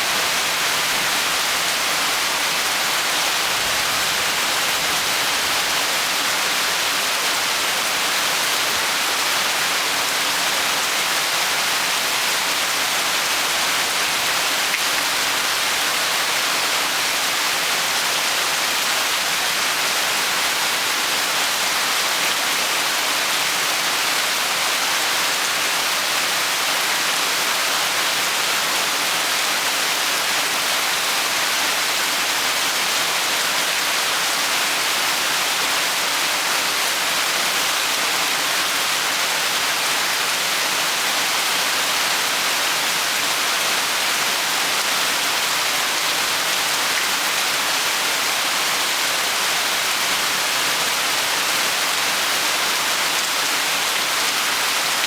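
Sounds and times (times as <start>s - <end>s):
rain falling steadily: 0.0s - 55.0s.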